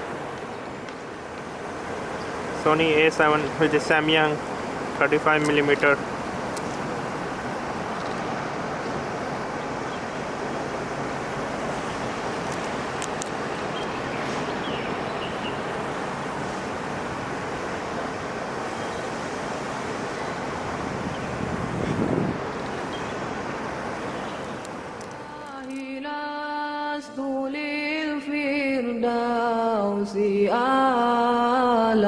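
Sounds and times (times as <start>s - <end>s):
steady rushing noise: 0.0s - 25.4s.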